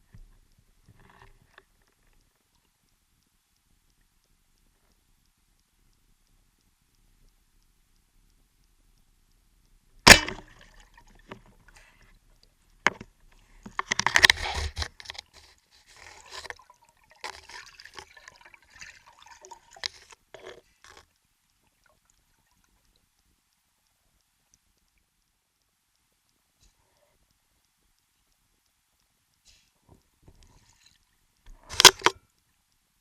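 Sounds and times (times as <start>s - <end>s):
underwater splashing: 15.9s - 20.8s.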